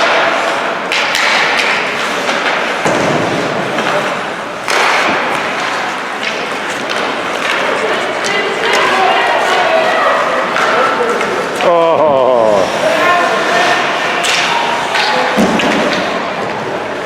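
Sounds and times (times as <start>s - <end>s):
puck thuds against boards: 0.9s - 4.0s.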